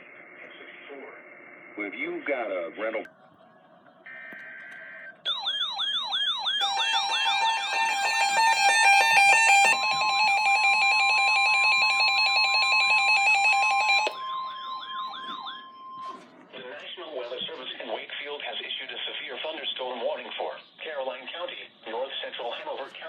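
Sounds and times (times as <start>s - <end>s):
electronic siren wails: 3.6s - 16.3s
electronic beeps: 4.1s - 16.3s
two-tone attention signal: 6.6s - 16.3s.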